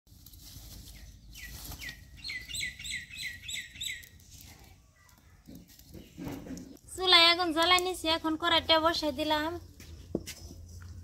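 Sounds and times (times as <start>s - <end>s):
bird chirping: 0.8s - 4.2s.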